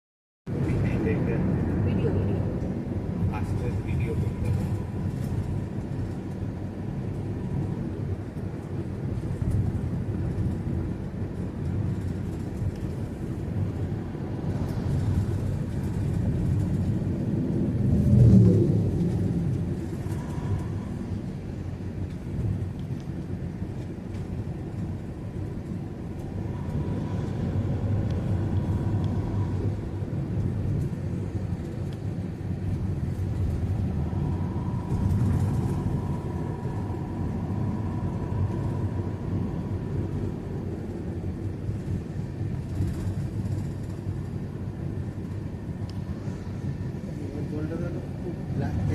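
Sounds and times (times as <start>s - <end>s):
road traffic rumble: 0.5s - 48.9s
vehicle passing by: 14.4s - 21.3s.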